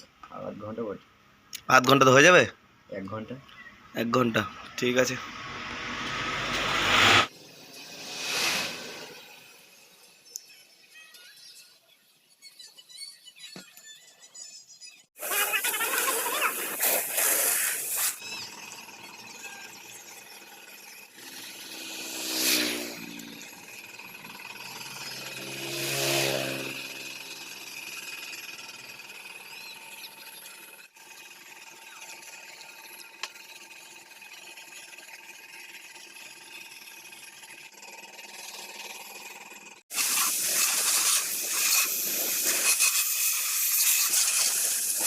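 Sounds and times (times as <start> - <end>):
vehicles passing by: 3.7 - 7.3
loud hiss: 5.0 - 10.0, 15.2 - 18.2, 39.9 - 45.0.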